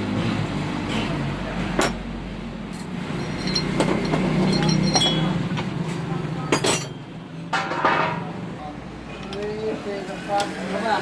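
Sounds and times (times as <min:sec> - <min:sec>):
metal tools clinking: 0:02.8 - 0:05.4, 0:06.5 - 0:08.2.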